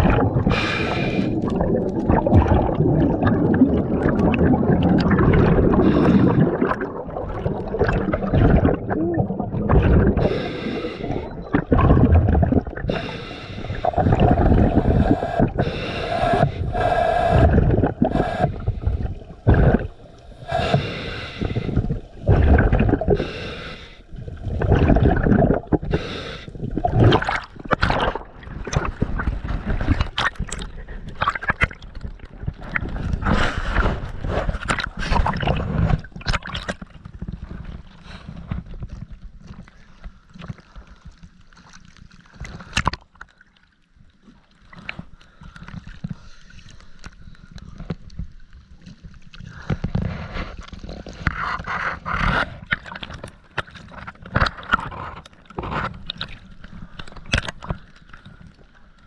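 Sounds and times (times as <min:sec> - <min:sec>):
exhaled bubbles underwater: 0:00.0 - 0:38.0
regulator humming on inhalation: 0:10.2 - 0:11.4, 0:12.9 - 0:22.0, 0:23.1 - 0:24.0.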